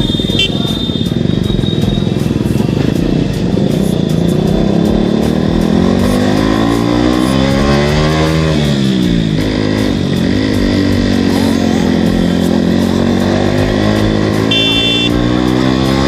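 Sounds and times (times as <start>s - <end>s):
motorcycle engine revving: 0.0s - 16.0s
short high beep: 14.5s - 15.1s.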